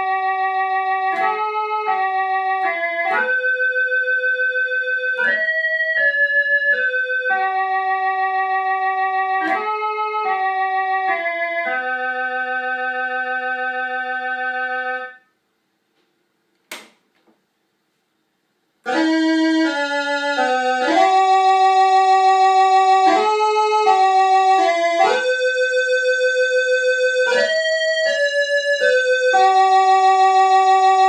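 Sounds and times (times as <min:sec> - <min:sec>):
keyboard playing held chords: 0:00.0 - 0:15.3, 0:18.8 - 0:31.0
single click: 0:16.7 - 0:17.0.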